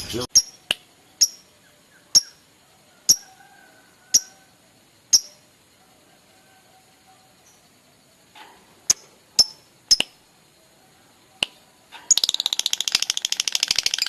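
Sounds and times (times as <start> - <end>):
bird high-pitched calls: 0.3 - 3.4, 4.1 - 4.5.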